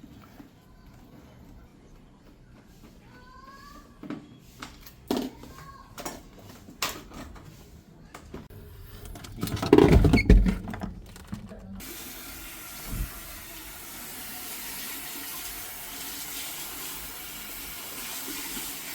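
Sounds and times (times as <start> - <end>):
knocks and thumps of handling: 9.1 - 11.8
running water hissing: 11.8 - 18.9.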